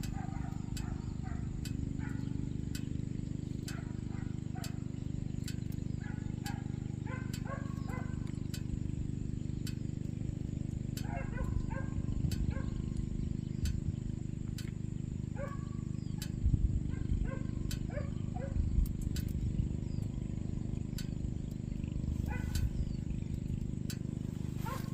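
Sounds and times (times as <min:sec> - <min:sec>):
dogs barking and yelping: 0:00.0 - 0:02.4, 0:03.7 - 0:04.9, 0:05.8 - 0:08.3, 0:11.0 - 0:12.8, 0:15.4 - 0:15.8, 0:16.8 - 0:18.7, 0:22.2 - 0:22.8, 0:24.5 - 0:24.9
steady low hum: 0:00.0 - 0:24.9
sharp clicks: 0:04.6 - 0:06.7, 0:09.6 - 0:10.2, 0:18.8 - 0:20.2.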